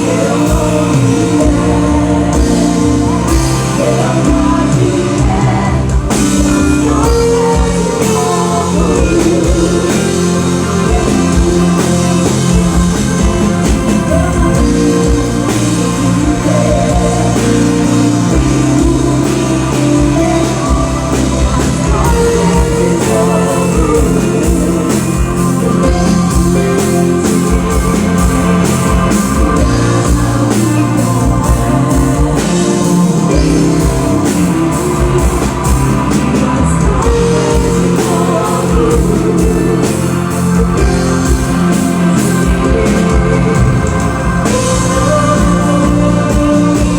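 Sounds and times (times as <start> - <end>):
band music with singer: 0.0 - 46.9.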